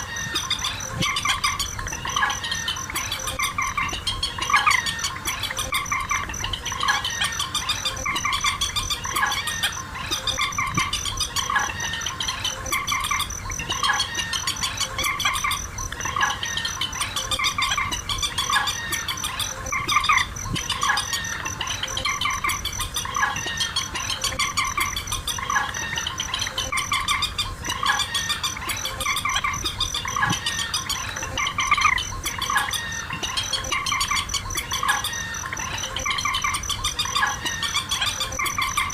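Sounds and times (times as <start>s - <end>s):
birds calling sharp notes: 0.0s - 38.9s
cricket trill: 0.0s - 38.9s.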